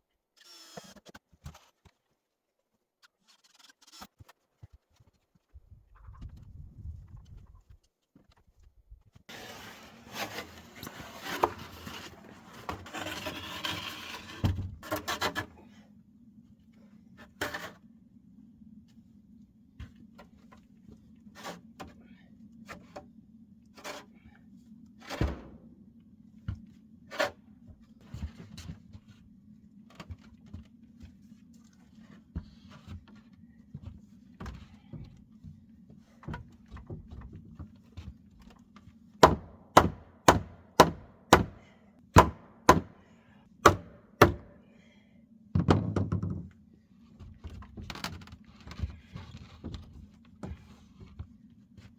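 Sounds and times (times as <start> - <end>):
rubbing and scraping wood: 9.3 - 15.5.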